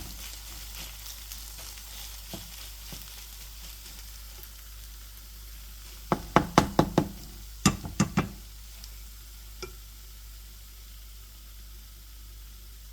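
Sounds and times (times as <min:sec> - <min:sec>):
faint steady hiss: 0:00.0 - 0:12.9
utensil knocking on frying pan: 0:06.1 - 0:08.5.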